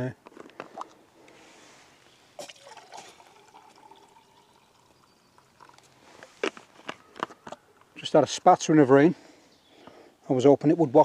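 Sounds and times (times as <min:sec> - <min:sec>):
water pouring into a mug: 0:02.4 - 0:05.9.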